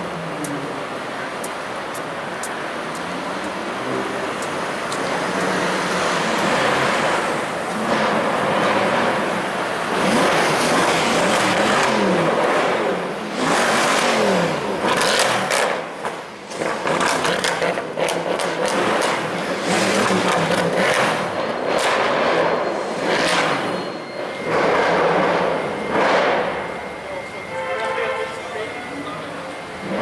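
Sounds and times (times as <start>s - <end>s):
street traffic: 0.0s - 30.0s
car engine revving: 2.8s - 27.0s.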